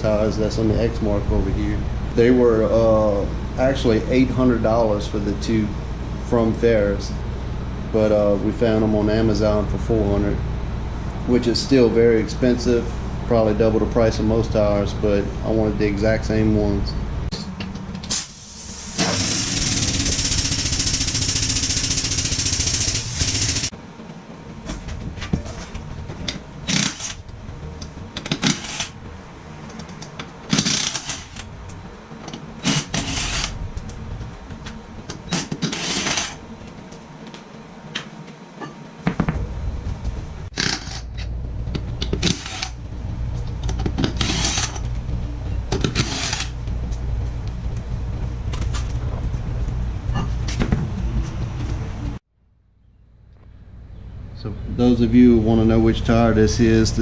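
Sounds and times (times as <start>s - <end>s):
low steady hum: 0.0s - 57.0s
air tool rattling bursts: 18.1s - 23.7s, 26.7s - 27.2s, 30.5s - 31.4s
loud air hissing: 18.1s - 23.7s.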